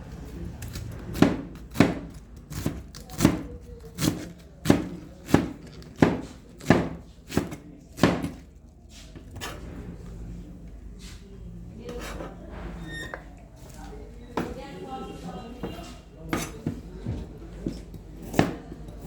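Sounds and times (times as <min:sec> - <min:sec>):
knife chopping on cutting board: 0:00.7 - 0:08.5, 0:16.3 - 0:16.8, 0:17.6 - 0:18.7.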